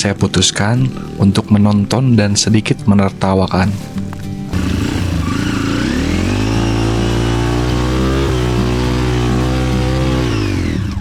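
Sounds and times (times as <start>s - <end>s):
motorcycle engine revving hard: 4.5s - 11.0s.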